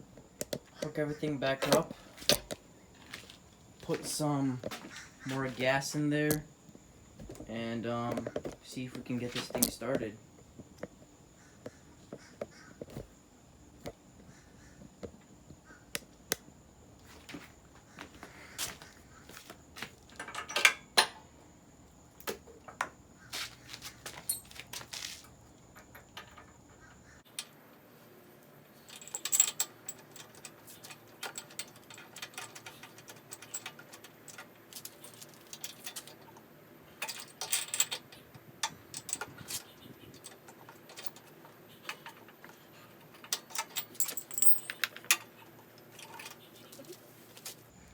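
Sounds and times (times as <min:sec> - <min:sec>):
hand tools clicking and rattling: 0:19.5 - 0:21.3, 0:22.7 - 0:27.6, 0:28.7 - 0:47.7.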